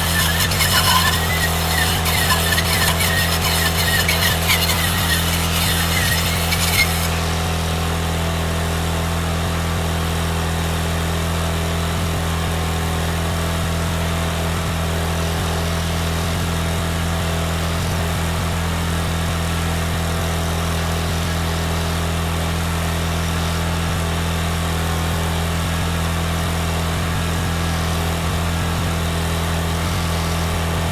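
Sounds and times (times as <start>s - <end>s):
hissing crackle: 0.0s - 7.8s
welding machine humming: 0.0s - 9.3s.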